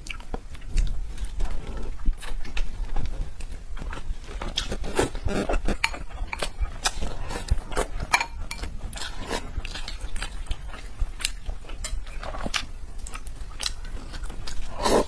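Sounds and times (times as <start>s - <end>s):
wet chewing and mouth smacking: 0.0s - 15.0s
utensils clicking against a dish: 5.7s - 7.0s, 8.0s - 8.7s.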